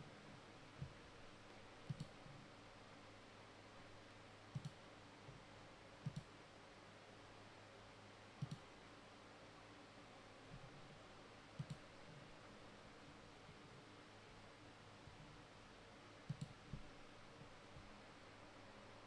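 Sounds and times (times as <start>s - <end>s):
computer mouse clicks: 1.9s - 2.3s, 4.5s - 4.8s, 6.0s - 6.4s, 8.4s - 8.7s, 11.6s - 11.9s, 16.3s - 16.9s.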